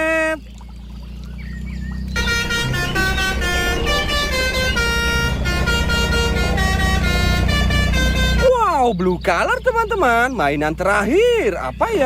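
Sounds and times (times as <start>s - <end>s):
steady low hum: 0.4s - 8.4s
multi-tone bus air horn: 2.2s - 8.6s.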